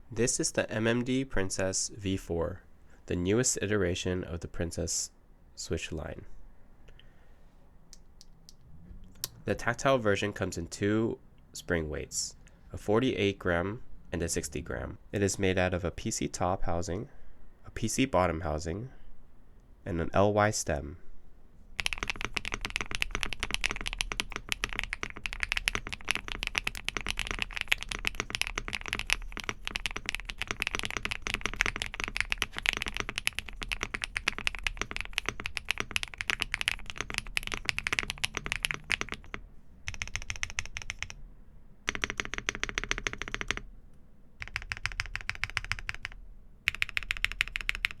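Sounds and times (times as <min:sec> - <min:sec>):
fast typing on mechanical keyboard: 0:21.8 - 0:41.2, 0:41.9 - 0:43.6, 0:44.4 - 0:48.0.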